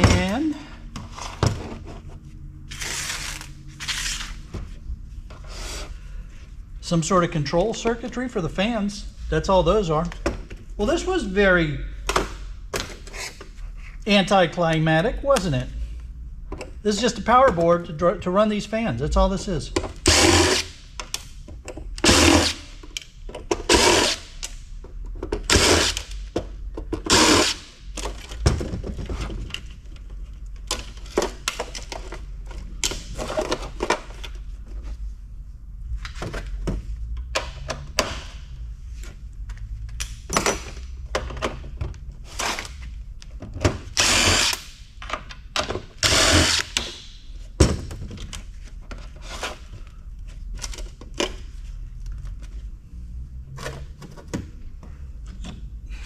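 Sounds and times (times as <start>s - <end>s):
power drill-driver running: 20.0s - 20.7s, 22.0s - 22.6s, 23.7s - 24.2s, 25.5s - 26.0s, 27.1s - 27.6s, 44.0s - 44.6s, 46.0s - 46.8s.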